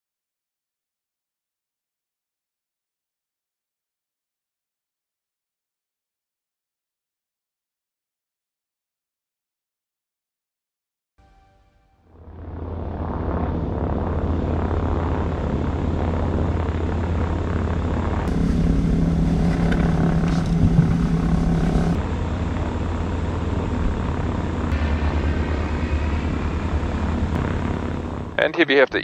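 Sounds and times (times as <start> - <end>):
deeper pitched hum: 12.1 - 28.7
propeller aircraft engine droning: 12.2 - 29.0.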